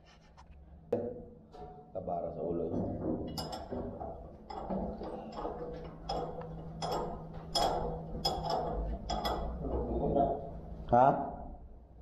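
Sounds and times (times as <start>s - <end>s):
faint low hum: 0.0s - 12.0s
metallic clicks and clinks: 3.3s - 10.7s.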